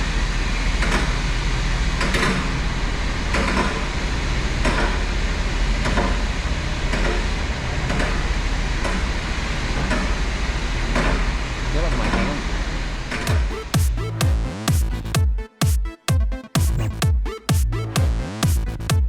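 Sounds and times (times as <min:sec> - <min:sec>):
road and engine rumble: 0:00.0 - 0:15.2
faint regular thumps: 0:13.3 - 0:19.0.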